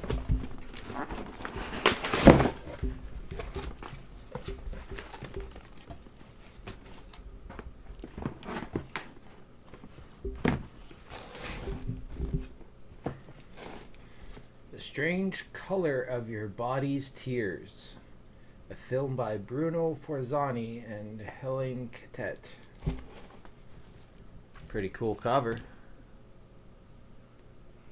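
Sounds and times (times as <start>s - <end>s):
crinkling and rustling of discs: 0.0s - 14.6s, 22.5s - 25.8s.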